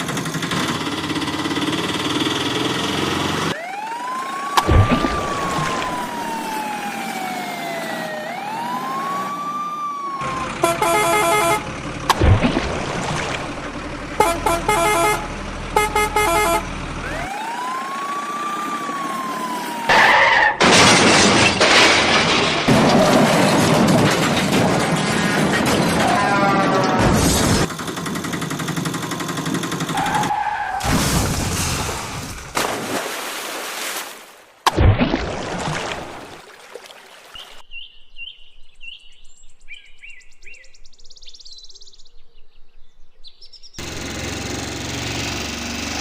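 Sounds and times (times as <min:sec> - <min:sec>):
wailing siren: 0:03.5 - 0:11.6, 0:14.2 - 0:20.6
short horn honks: 0:10.5 - 0:11.7, 0:14.1 - 0:16.8.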